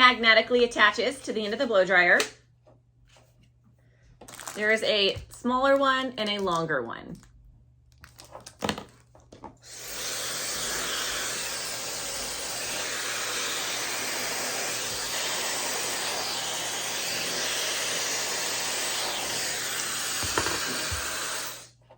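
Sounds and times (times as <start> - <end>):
hair dryer blowing air: 9.6 - 21.8.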